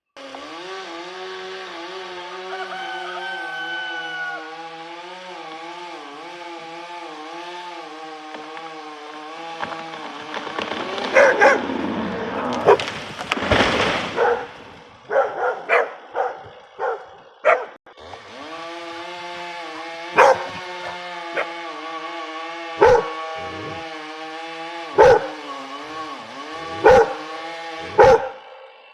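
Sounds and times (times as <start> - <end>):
dog barking: 11.1 - 11.6, 14.2 - 14.5, 15.1 - 17.8, 20.1 - 20.6, 21.4 - 21.6, 22.8 - 23.7, 25.0 - 25.4, 26.8 - 27.3, 27.9 - 28.5.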